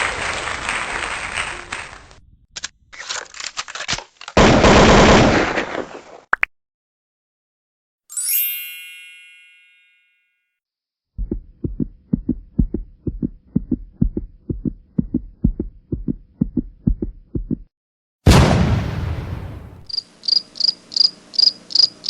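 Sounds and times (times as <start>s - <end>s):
bright chime ding: 8.1s - 10.4s
heartbeat thumps: 11.2s - 17.7s.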